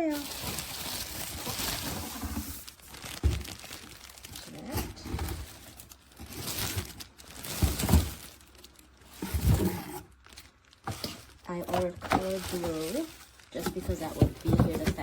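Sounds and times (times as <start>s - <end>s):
packaging crinkling and rustling: 0.0s - 15.0s
dull thumps: 13.6s - 15.0s.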